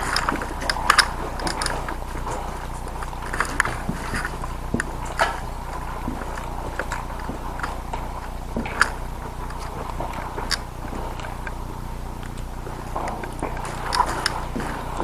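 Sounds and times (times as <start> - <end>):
gun clicks: 0.0 - 5.5
crunching footsteps: 0.0 - 15.0
steady low hum: 0.0 - 15.0.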